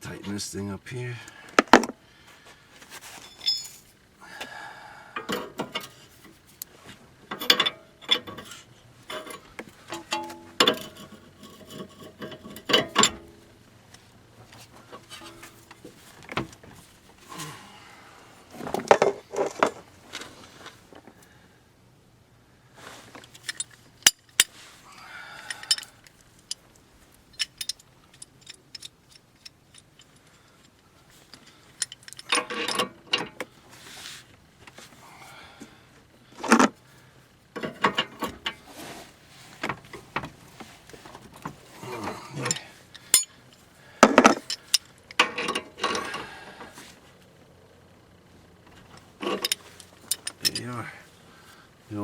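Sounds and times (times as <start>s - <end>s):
metallic clicks: 25.5s - 30.7s.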